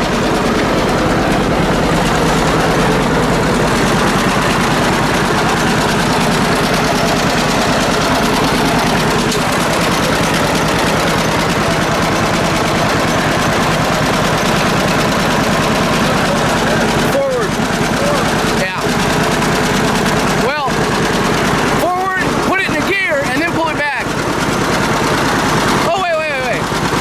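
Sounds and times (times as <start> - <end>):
tractor engine running: 0.0 - 27.0.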